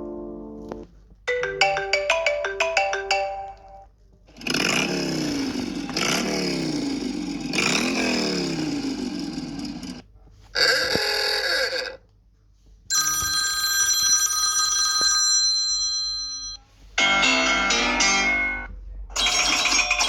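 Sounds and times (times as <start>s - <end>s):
phone ringtones: 12.9s - 20.0s.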